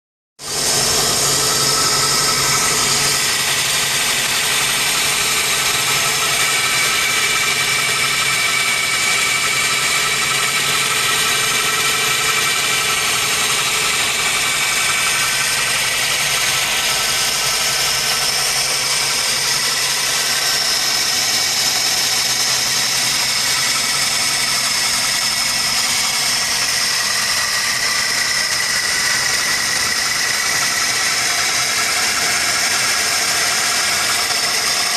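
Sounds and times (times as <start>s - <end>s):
car engine idling with misfire: 0.4s - 34.9s.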